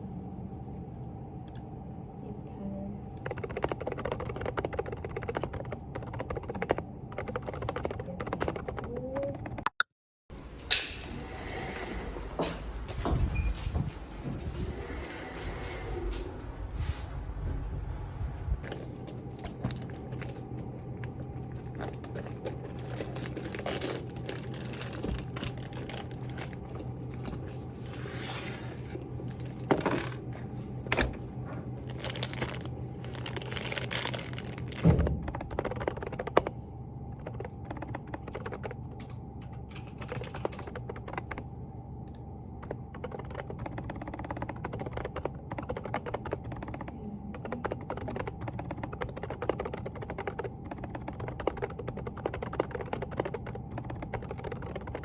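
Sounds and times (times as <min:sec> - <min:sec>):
low room hum: 0:00.0 - 0:09.6, 0:10.3 - 0:55.0
soft keyboard typing: 0:03.2 - 0:09.8, 0:31.9 - 0:55.0.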